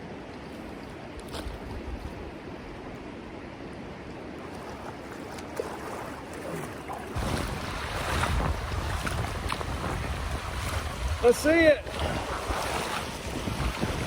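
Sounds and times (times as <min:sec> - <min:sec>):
river water rushing over rapids: 0:04.1 - 0:14.0
wind buffeting microphone: 0:07.1 - 0:14.0.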